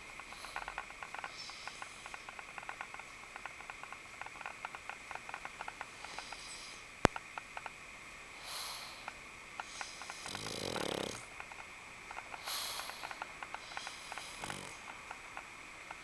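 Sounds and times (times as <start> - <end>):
faint small ticks: 0.0 - 7.8, 8.5 - 16.0
dog snoring: 8.4 - 11.3, 12.4 - 14.9.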